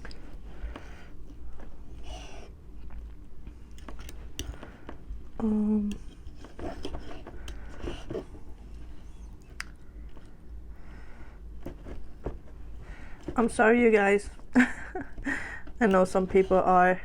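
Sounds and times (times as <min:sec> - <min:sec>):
person humming: 0:05.4 - 0:06.0.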